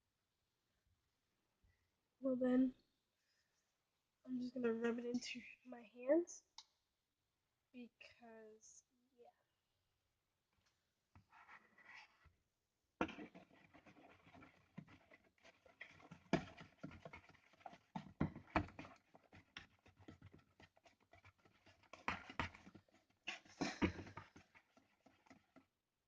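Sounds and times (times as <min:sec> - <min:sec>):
shaving cream squelching: 0:13.0 - 0:25.7.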